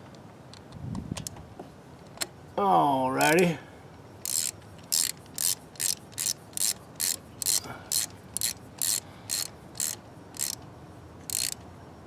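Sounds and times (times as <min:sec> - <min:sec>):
ratchet wrench clicking: 0:03.2 - 0:03.4, 0:04.2 - 0:10.6, 0:11.3 - 0:11.6.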